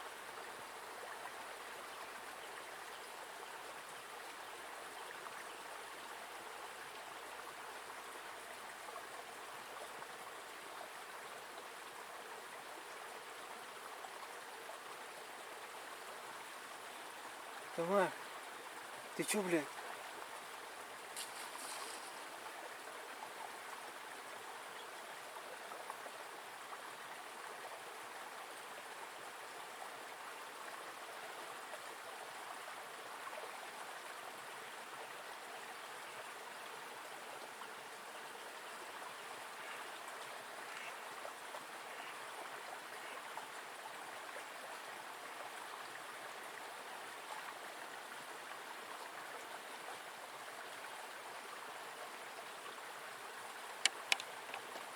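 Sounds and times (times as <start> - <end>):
river flowing: 0.0 - 54.9.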